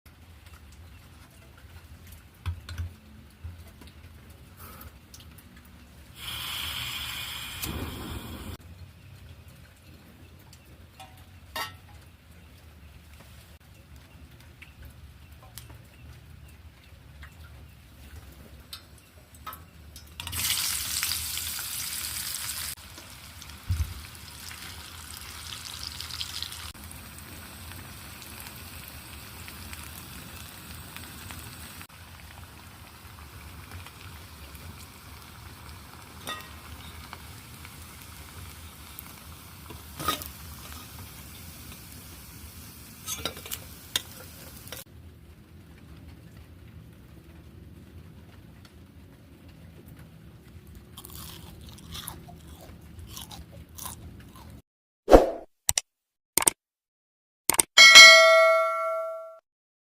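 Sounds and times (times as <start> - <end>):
food sizzling in hot oil: 6.2 - 8.6, 20.2 - 44.9
sharp clicks: 56.4 - 56.6, 57.5 - 57.7.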